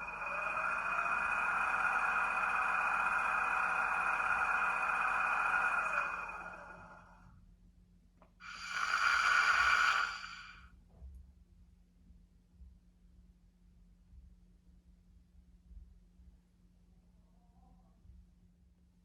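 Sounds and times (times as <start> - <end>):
compressed air hissing: 8.4 - 10.6.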